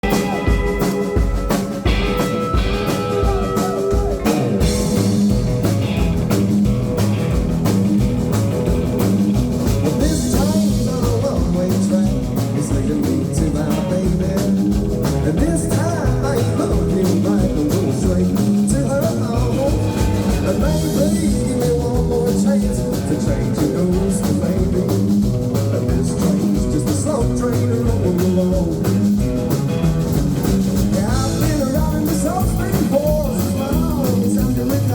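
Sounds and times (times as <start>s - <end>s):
live rock band playing: 0.0s - 34.9s.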